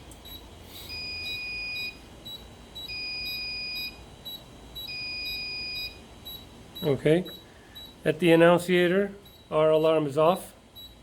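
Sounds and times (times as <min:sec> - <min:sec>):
long electronic alarm tone: 0:00.7 - 0:04.0, 0:04.8 - 0:08.1.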